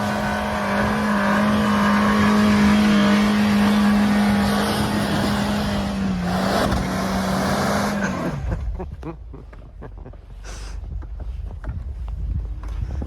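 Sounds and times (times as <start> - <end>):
car engine at high revs: 0.0 - 8.8.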